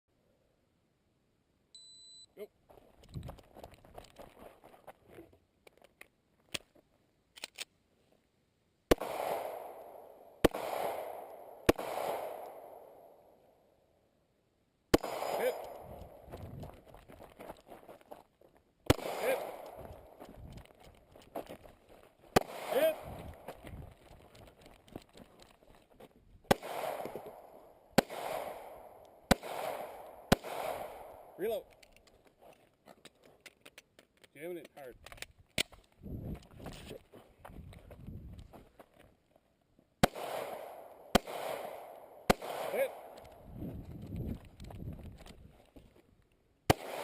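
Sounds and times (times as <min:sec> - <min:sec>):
gunshots with rolling echo: 0:08.9 - 0:13.8, 0:14.9 - 0:16.4, 0:18.9 - 0:20.2, 0:22.3 - 0:24.0, 0:26.5 - 0:31.7, 0:40.0 - 0:43.5, 0:46.7 - 0:47.0.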